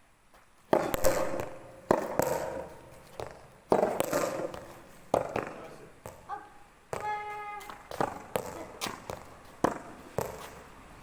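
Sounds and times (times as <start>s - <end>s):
racket striking ball: 0.7s - 10.7s.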